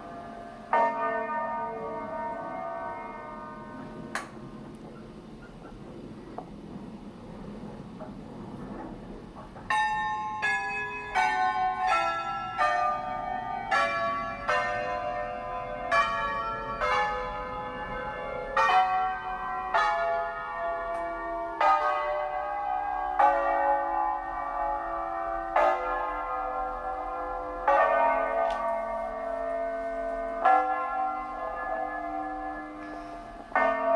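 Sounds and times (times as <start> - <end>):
tower bells playing a tune: 0.0 - 4.6, 9.7 - 33.9.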